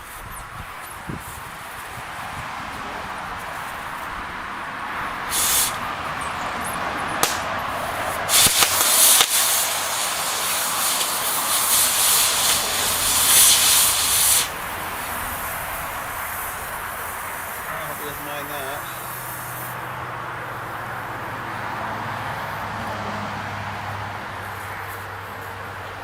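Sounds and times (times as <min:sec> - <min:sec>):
cutting torch hissing: 0:05.1 - 0:06.4, 0:07.2 - 0:19.9
sharp pops or clicks: 0:07.2 - 0:14.5.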